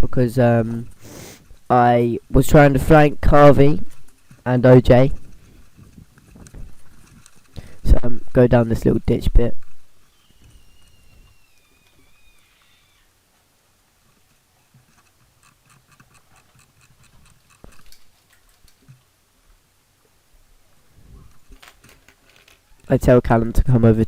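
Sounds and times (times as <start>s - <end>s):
faint wavering whistle: 10.1s - 13.1s.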